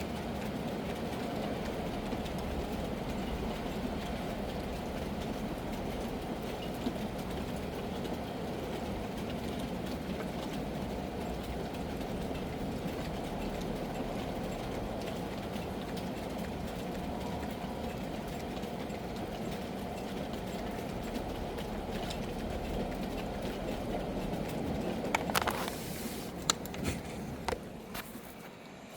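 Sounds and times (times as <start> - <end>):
steady rain: 0.0 - 28.9.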